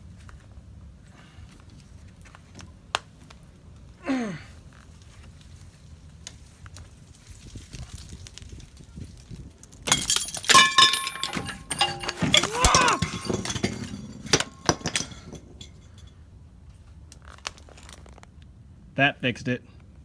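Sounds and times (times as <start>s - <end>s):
steel tools clanking on metal: 9.9s - 16.0s.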